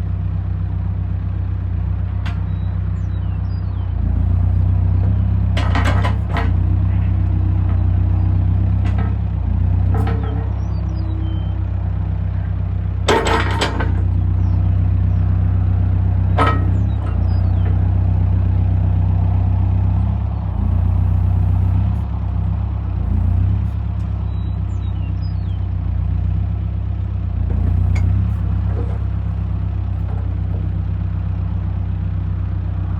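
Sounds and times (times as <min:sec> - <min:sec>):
diesel engine running: 0:00.0 - 0:32.9
metal clanking: 0:04.0 - 0:11.7, 0:13.0 - 0:26.8, 0:27.4 - 0:31.0.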